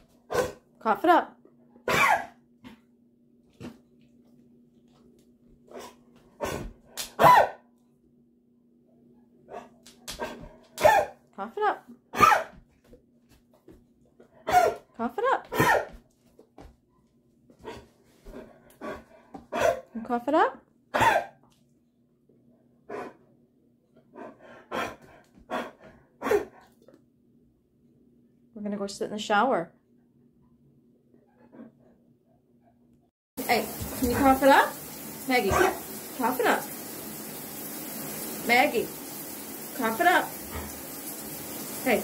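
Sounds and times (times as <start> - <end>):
dog hacking cough: 1.9 - 2.3, 18.8 - 19.9, 20.9 - 21.4, 24.7 - 26.6.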